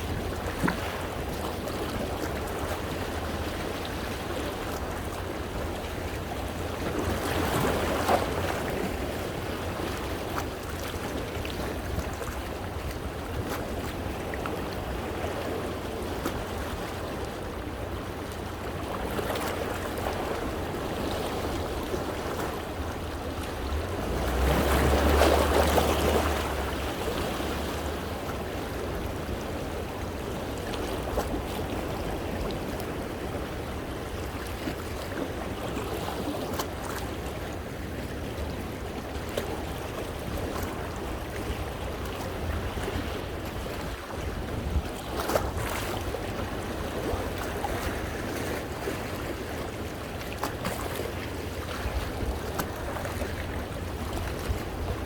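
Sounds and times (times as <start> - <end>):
sea waves against rocks: 0.0 - 55.0
water sloshing between rocks: 4.5 - 33.9.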